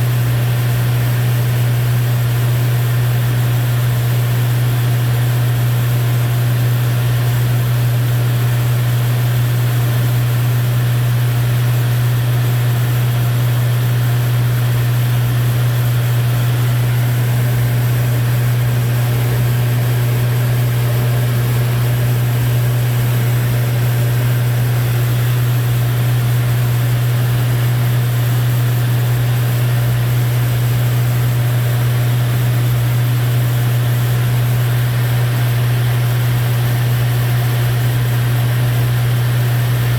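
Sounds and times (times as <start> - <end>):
propeller engine droning: 13.2 - 39.9.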